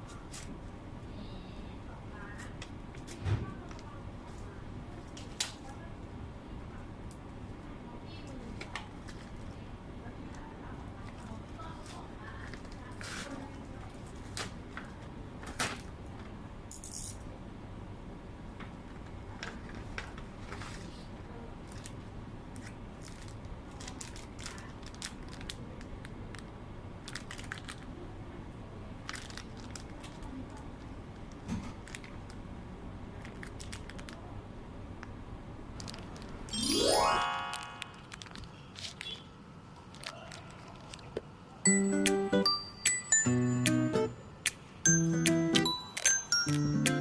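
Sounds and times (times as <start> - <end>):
packaging crinkling: 23.0 - 25.6, 29.1 - 30.2.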